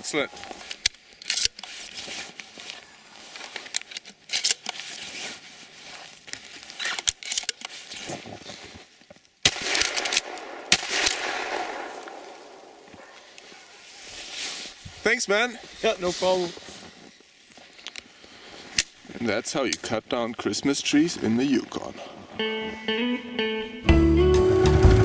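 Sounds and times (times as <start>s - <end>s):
shotgun shots: 9.4s - 12.9s.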